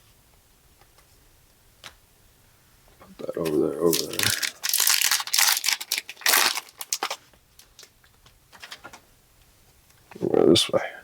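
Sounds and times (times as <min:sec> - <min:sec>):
wrapper being ripped open: 0:03.8 - 0:07.9.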